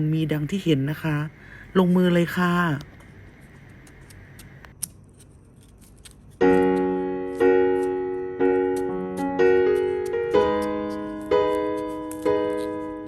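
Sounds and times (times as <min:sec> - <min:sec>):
keyboard chords music: 0:06.4 - 0:13.0.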